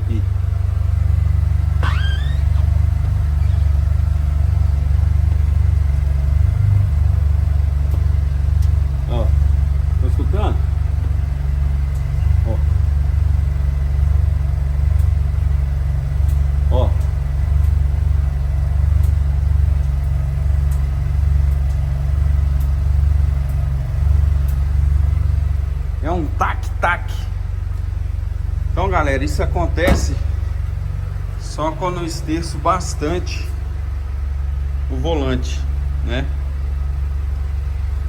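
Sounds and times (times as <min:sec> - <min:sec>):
car engine idling: 0:00.0 - 0:38.0
faint light ticks: 0:15.0 - 0:15.2, 0:16.2 - 0:16.4, 0:17.0 - 0:17.8, 0:19.0 - 0:19.2, 0:19.8 - 0:21.9, 0:22.5 - 0:22.8, 0:24.4 - 0:24.6.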